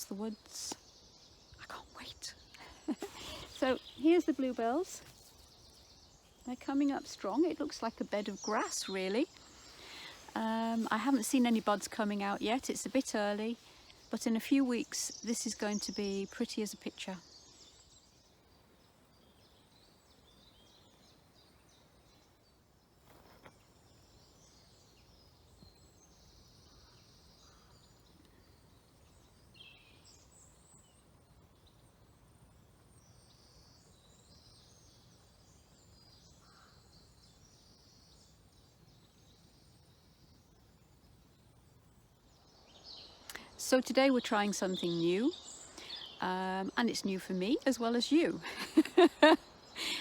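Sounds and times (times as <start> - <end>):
distant songbirds chirping: 0.0 - 50.0.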